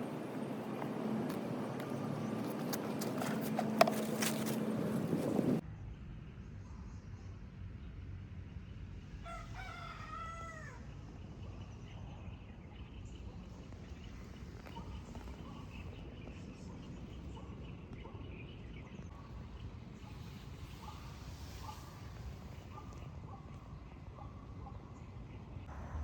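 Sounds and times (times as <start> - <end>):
rooster crowing: 9.2 - 10.9.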